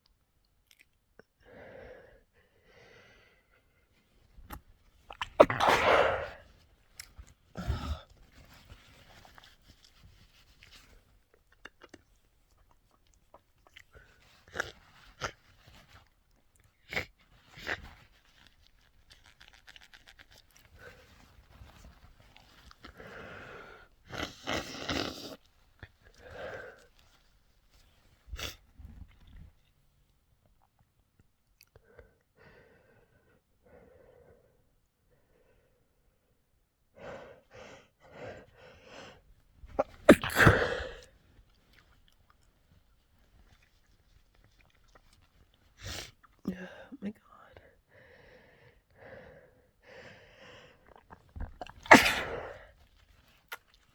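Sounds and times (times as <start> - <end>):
person sneezing: 5.2 - 6.4, 39.8 - 41.0, 51.6 - 52.6
person sniffling: 5.4 - 6.5, 39.8 - 41.1, 51.7 - 52.7.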